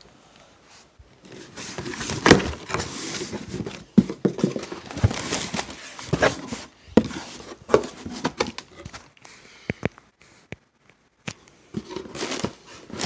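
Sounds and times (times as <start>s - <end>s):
packaging rustling: 1.3s - 8.9s, 11.8s - 13.0s.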